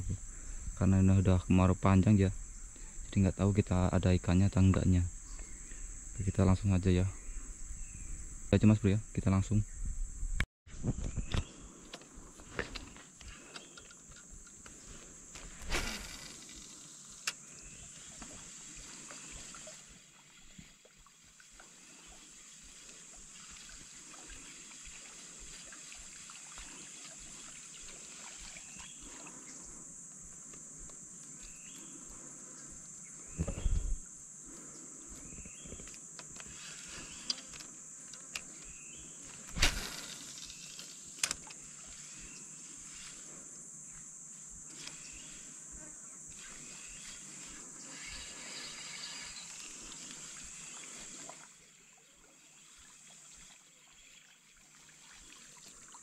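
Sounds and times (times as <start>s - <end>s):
high-pitched insect drone: 0.0s - 11.7s, 12.5s - 56.0s
dull thumps: 33.3s - 34.0s.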